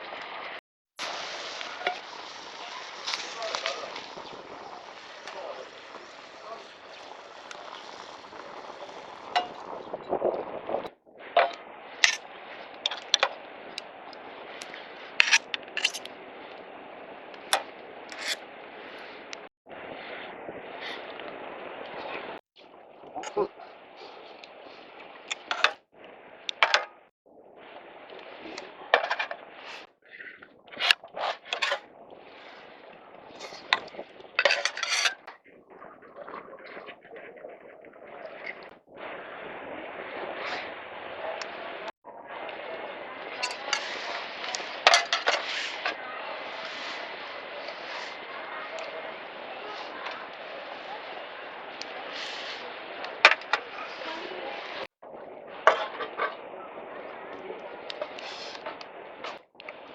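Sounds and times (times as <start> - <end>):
hard objects scraping and clinking: 18.1 - 18.4, 34.4 - 35.3.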